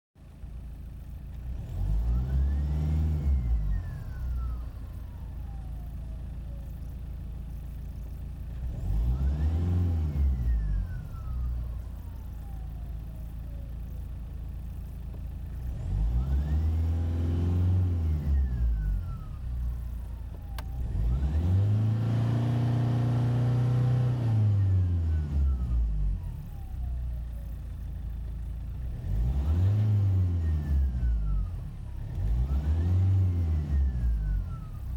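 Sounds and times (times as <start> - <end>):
diesel car engine revving: 0.3 - 34.9.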